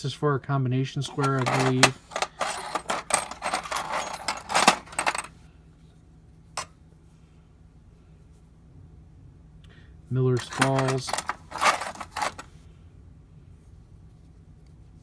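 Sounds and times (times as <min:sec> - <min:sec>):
metal tools clinking in a drawer: 0:01.0 - 0:05.3, 0:10.4 - 0:12.5.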